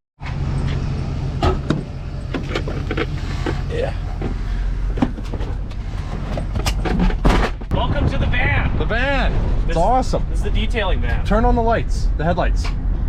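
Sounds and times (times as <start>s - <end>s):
van engine running: 0.2s - 7.7s.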